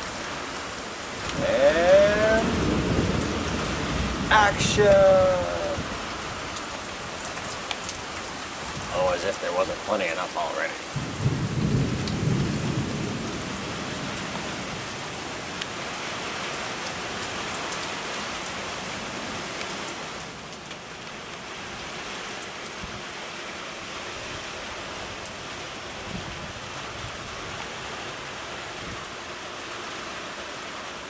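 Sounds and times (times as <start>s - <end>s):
steady rain falling: 0.0s - 31.0s
thunder rumbling: 1.3s - 6.2s, 11.0s - 15.5s.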